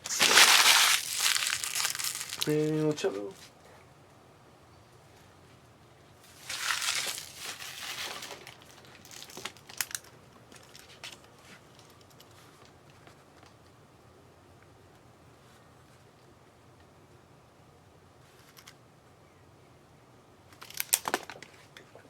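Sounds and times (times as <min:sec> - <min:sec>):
plastic wrapper crinkling and tearing: 0:00.0 - 0:02.8, 0:06.4 - 0:10.0
clicks and rustles of handling: 0:00.0 - 0:03.6, 0:06.2 - 0:13.8, 0:20.5 - 0:22.0.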